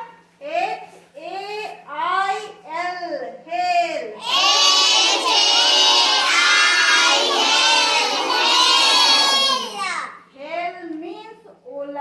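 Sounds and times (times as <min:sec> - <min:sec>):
children chanting in unison: 0:04.2 - 0:10.1.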